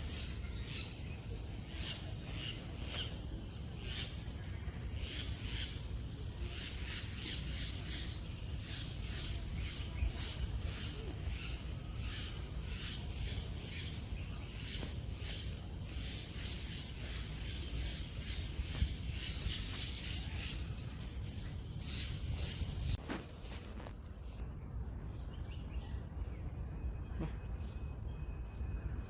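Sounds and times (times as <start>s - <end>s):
birds chirping: 0.0s - 23.0s
insects droning: 0.0s - 25.7s.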